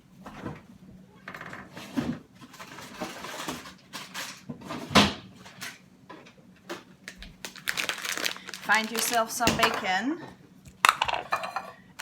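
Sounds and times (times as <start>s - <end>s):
kitchen things knocking and clicking: 9.4s - 10.0s, 10.7s - 11.8s.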